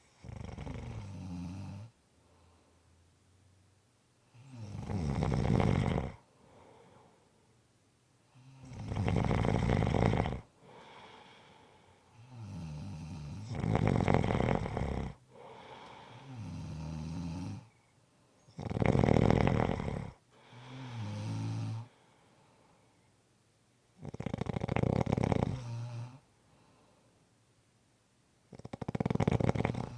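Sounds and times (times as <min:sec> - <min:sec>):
person snoring: 0:00.2 - 0:01.9, 0:04.4 - 0:06.2, 0:08.4 - 0:11.6, 0:12.2 - 0:17.7, 0:18.5 - 0:22.0, 0:24.0 - 0:26.2, 0:28.5 - 0:29.9.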